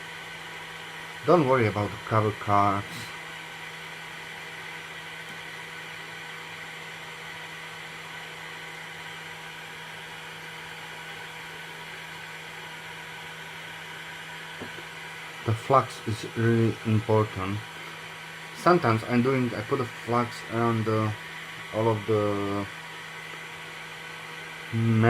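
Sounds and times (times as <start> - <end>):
hot-air gun fan hiss: 0.0 - 25.0
constant low hum: 0.7 - 3.4.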